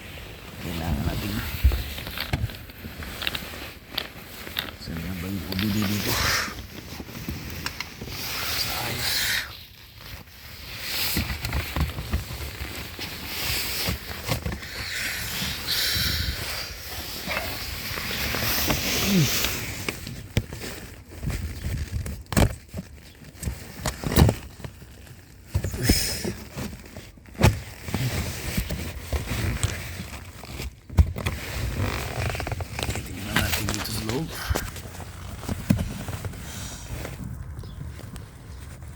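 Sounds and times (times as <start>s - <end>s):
hands rustling on plastic trim: 10.0s - 38.9s.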